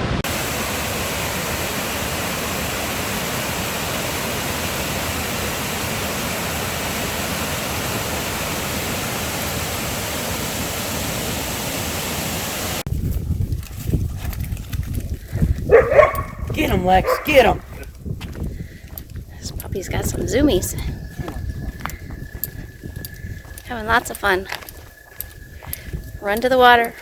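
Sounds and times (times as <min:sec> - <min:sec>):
waterfall rushing: 0:00.0 - 0:12.8.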